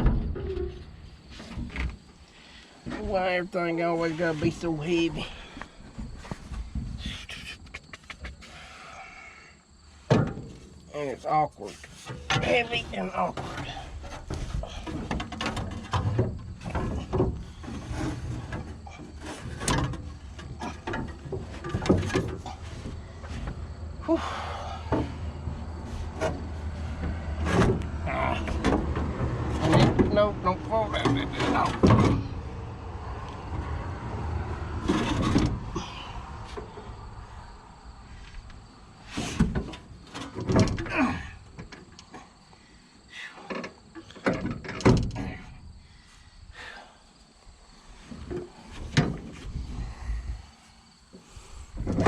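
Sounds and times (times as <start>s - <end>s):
clunks of heavy machine parts: 25.9s - 32.4s.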